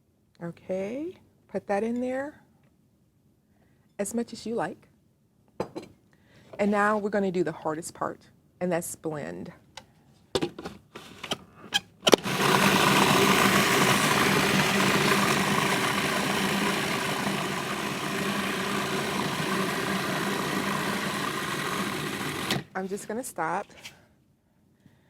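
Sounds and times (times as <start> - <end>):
electric blender motor running: 12.1 - 22.8.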